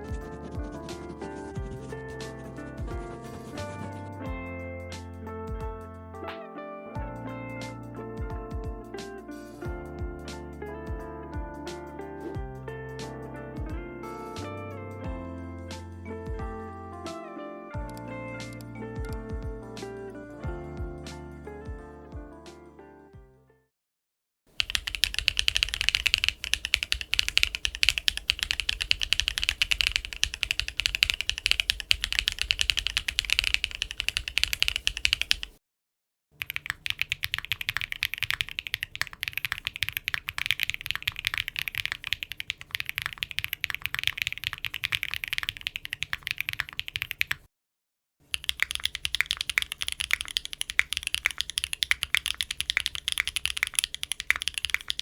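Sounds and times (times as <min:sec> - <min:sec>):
mechanical keyboard typing: 0:24.6 - 0:35.6, 0:36.4 - 0:47.5, 0:48.3 - 0:55.0.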